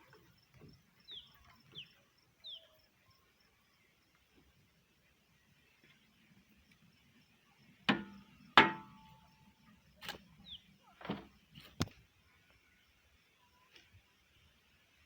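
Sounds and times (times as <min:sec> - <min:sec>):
digging tool striking hard ground: 0:07.9 - 0:09.1.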